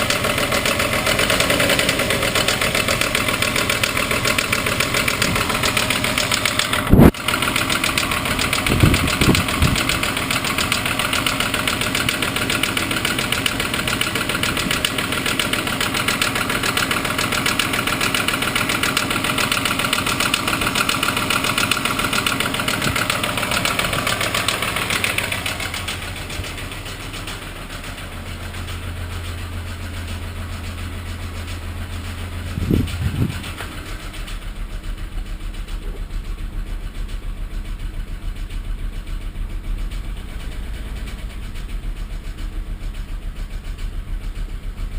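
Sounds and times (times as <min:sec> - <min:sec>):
car engine knocking: 0:00.0 - 0:44.9
engine thumps: 0:00.0 - 0:44.9.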